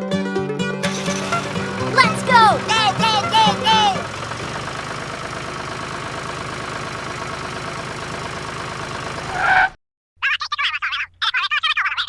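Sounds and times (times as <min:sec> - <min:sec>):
diesel engine running: 0:00.8 - 0:09.7.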